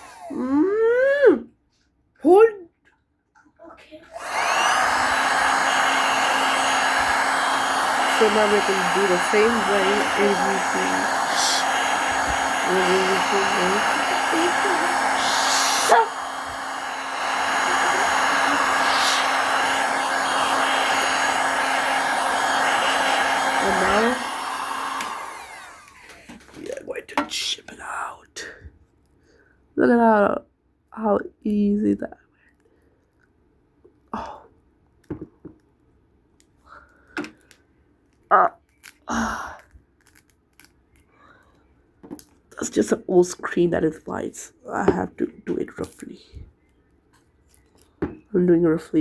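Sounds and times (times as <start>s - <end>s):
hot-air blower humming: 0.0s - 0.6s, 4.1s - 26.9s
glass cracking and crunching: 40.0s - 40.8s.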